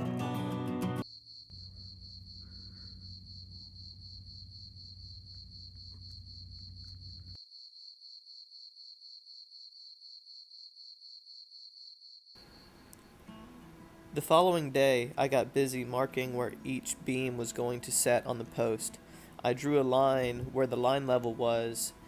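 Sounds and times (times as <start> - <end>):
crickets chirping: 1.0 - 13.5.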